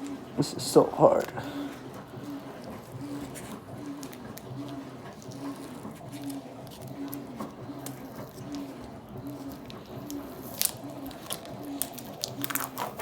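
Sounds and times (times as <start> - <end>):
faint pulsing hum: 0.0 - 13.0
plastic wrapper crinkling and tearing: 7.8 - 13.0.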